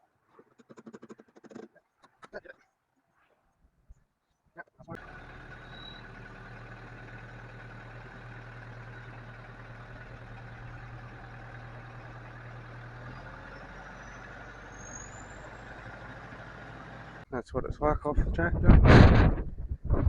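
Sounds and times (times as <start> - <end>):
tractor engine idling: 4.9 - 17.2.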